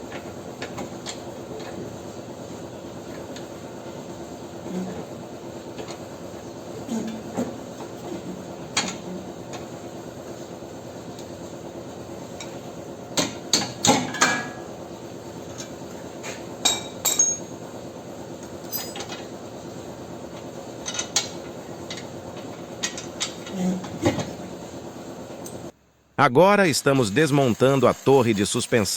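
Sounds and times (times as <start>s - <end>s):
metal tools knocking and clinking: 16.6s - 17.5s, 18.6s - 19.2s.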